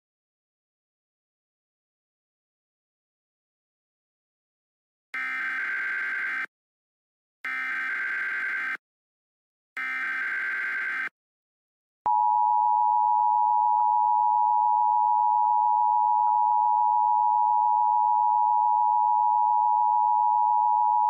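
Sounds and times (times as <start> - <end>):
screeching digital header tones: 5.2 - 6.5, 7.5 - 8.8, 9.8 - 11.1.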